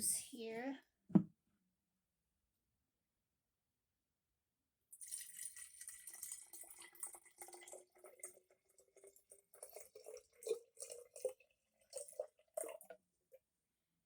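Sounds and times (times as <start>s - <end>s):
juice pouring into a glass: 4.9s - 13.4s
dripping: 5.0s - 13.0s.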